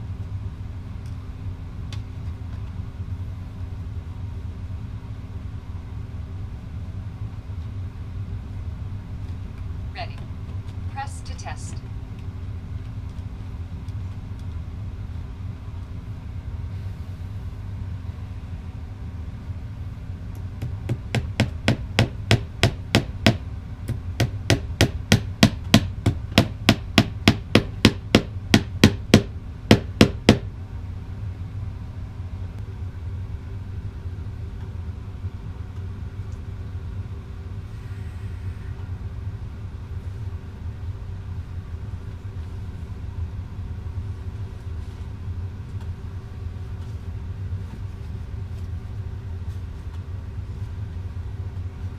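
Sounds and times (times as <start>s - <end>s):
steady low hum: 0.0s - 51.9s
rapid sharp knocks: 20.6s - 30.5s.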